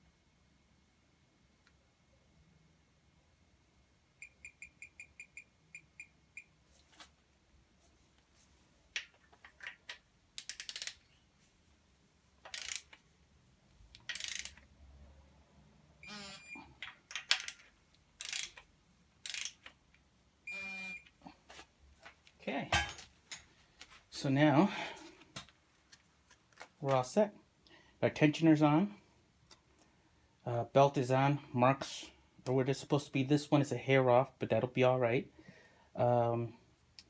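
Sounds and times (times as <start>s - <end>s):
ratchet clicks: 10.4s - 11.0s, 12.5s - 13.0s, 13.9s - 14.6s, 18.2s - 19.8s.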